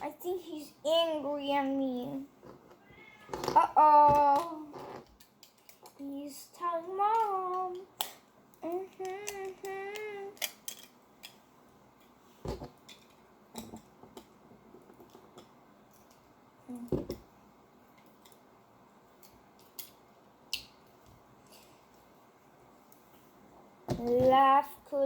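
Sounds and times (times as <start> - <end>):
plastic pieces clicking: 4.1 - 6.0, 7.0 - 11.4.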